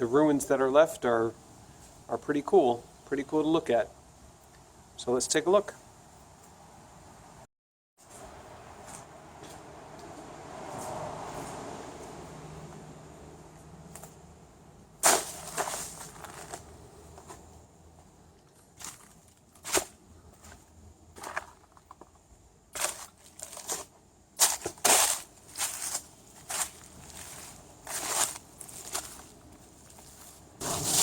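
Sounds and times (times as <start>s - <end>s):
footsteps outdoors: 6.0s - 6.7s, 8.0s - 31.0s.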